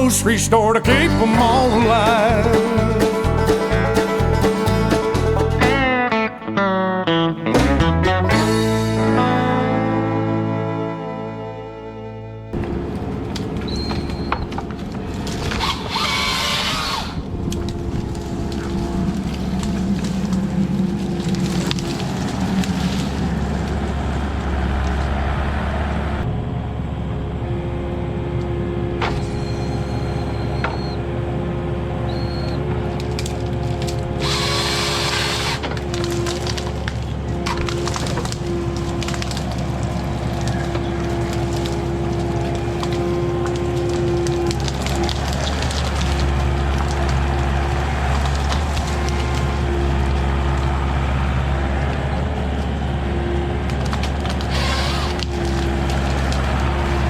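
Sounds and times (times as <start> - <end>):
heavy machinery diesel engine: 0.0 - 6.2, 7.2 - 57.0
branches cracking and splintering: 12.6 - 26.1, 32.8 - 57.0.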